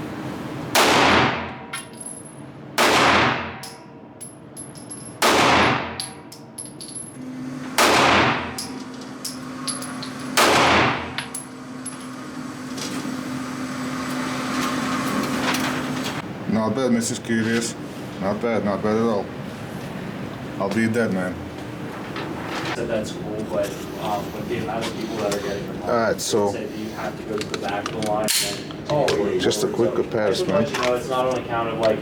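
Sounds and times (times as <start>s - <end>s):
pistol shots echoing: 0.8s - 1.6s, 2.8s - 3.8s, 5.2s - 6.0s, 7.8s - 8.5s, 10.4s - 11.2s.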